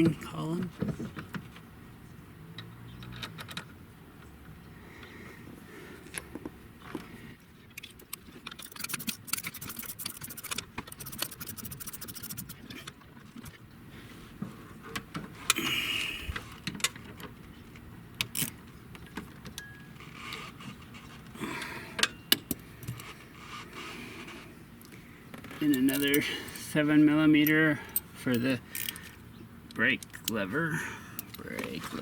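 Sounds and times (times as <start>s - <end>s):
rapid ratchet clicking: 8.6s - 12.6s
hand tools clinking on metal: 25.6s - 26.7s.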